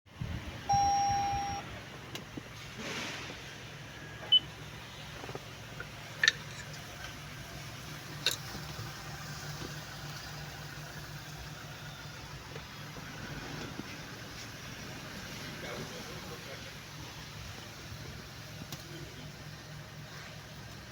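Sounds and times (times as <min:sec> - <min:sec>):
low hum: 0:00.2 - 0:01.6
electronic beep: 0:00.7 - 0:01.6.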